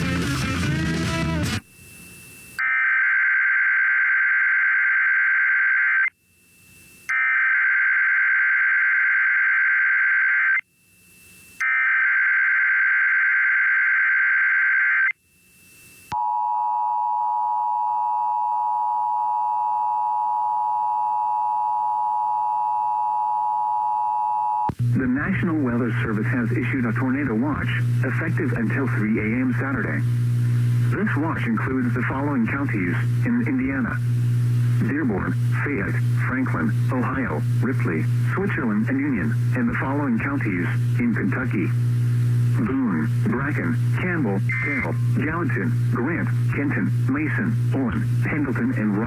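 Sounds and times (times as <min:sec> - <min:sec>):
data tone bursts: 0:42.3 - 0:49.0.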